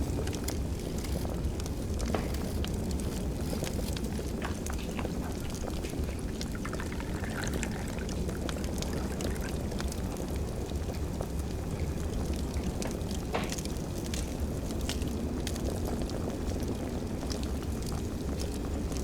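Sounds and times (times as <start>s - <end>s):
wood fire crackling: 0.0s - 19.0s
liquid being poured: 3.4s - 10.4s.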